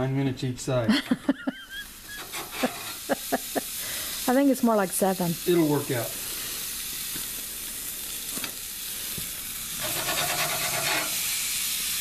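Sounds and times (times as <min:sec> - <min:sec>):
patties sizzling on a grill: 0:00.0 - 0:12.0
rough buzzing noise: 0:09.8 - 0:11.2.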